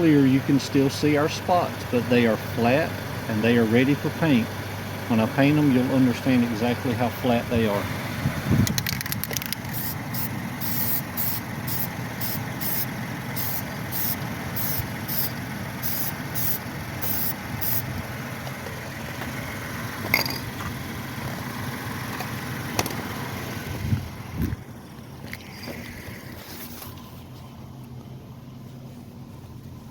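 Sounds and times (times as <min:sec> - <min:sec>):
engine-like hum: 0:00.0 - 0:29.9
short hissing bursts: 0:09.7 - 0:17.9.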